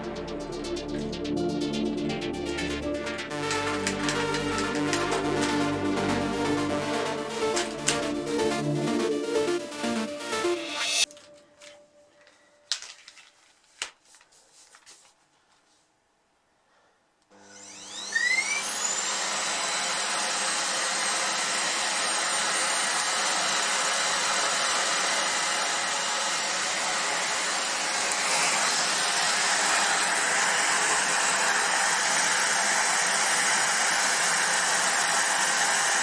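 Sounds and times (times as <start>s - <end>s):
vacuum cleaner motor whine: 17.3s - 36.0s.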